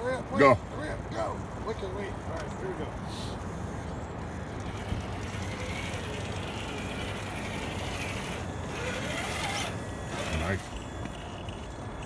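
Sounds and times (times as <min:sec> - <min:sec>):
toy motor and gears whining: 0:04.2 - 0:12.0.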